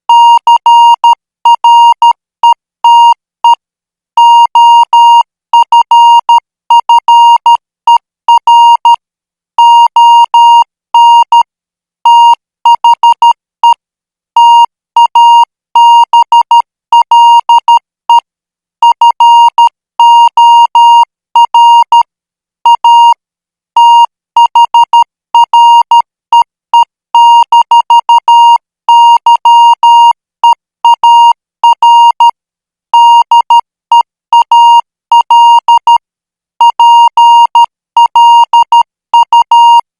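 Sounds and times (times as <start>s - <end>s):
morse code beeps: 30.9s - 32.3s, 33.0s - 36.0s, 36.6s - 39.8s.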